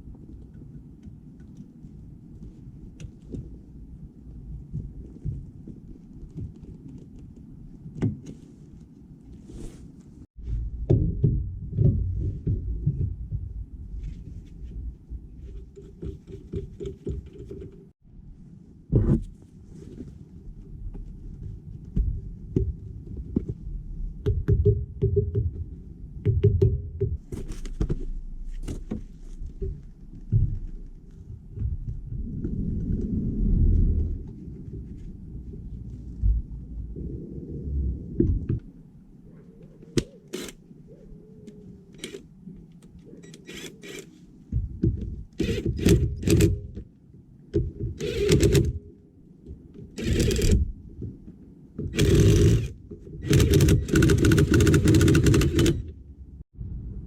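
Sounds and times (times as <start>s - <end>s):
knocks and thuds: 10.4s - 13.7s
low rumble: 10.4s - 15.4s, 28.0s - 39.0s, 56.0s - 57.0s.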